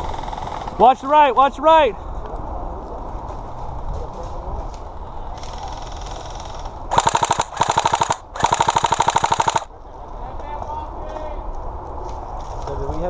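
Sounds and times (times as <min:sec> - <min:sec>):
airsoft gun firing bursts: 0:06.9 - 0:09.7.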